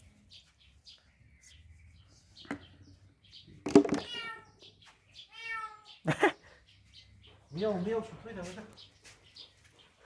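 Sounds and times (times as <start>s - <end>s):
cat meowing: 4.0s - 4.6s, 5.3s - 5.9s.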